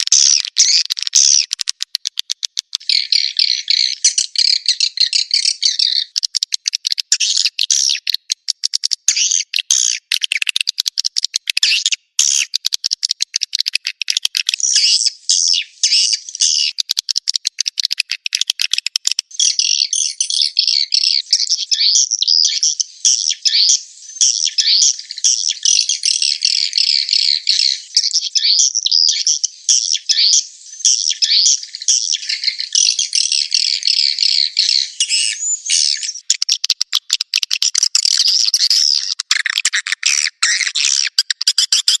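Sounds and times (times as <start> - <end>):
rapid dry clicks: 0.0 - 2.8, 6.2 - 7.2, 8.2 - 9.1, 10.2 - 11.5, 12.6 - 14.6, 16.9 - 19.3, 36.3 - 42.0
swiftlets twittering chirps: 19.2 - 42.0.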